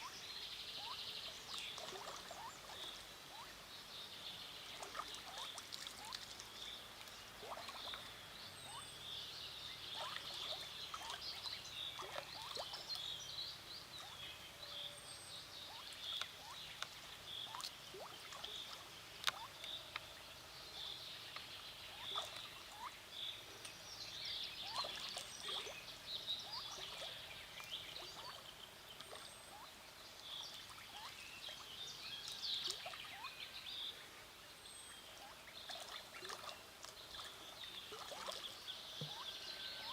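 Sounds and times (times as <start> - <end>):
water splashes: 0.8 - 3.5, 4.6 - 8.8, 9.9 - 13.0, 15.8 - 19.8, 21.9 - 22.9, 24.6 - 29.6, 35.2 - 39.4
ducklings peeping: 1.7 - 3.6, 8.7 - 9.0, 10.0 - 12.8, 15.6 - 19.6, 21.9 - 22.9, 24.6 - 25.8, 30.6 - 31.2.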